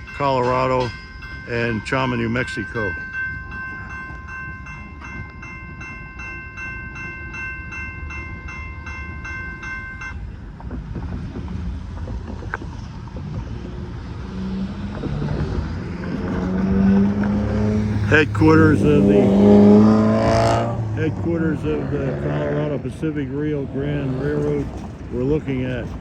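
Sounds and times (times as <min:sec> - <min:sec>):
railroad crossing bell ringing: 0:00.0 - 0:10.7, 0:17.3 - 0:26.0
passing train rumble: 0:00.0 - 0:26.0
low engine drone: 0:10.4 - 0:26.0.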